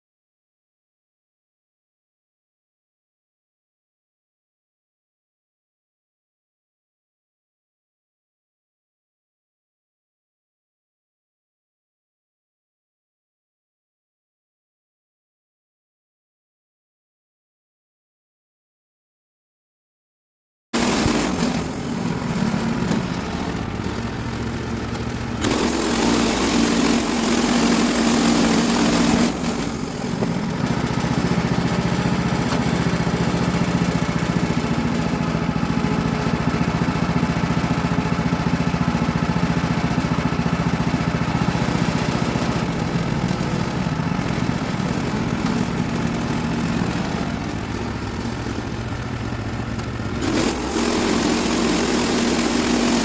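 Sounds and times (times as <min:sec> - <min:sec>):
sawmill engine running: 0:20.8 - 0:53.0.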